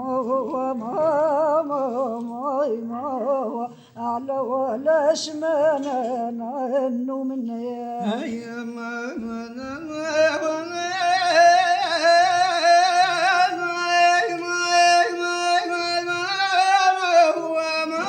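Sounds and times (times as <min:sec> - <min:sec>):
person singing unaccompanied: 0:00.0 - 0:18.0.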